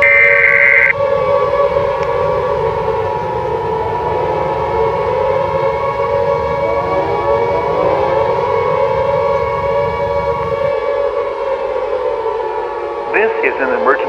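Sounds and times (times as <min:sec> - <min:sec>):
warning siren: 0:00.0 - 0:10.7
low rumble: 0:00.9 - 0:10.7.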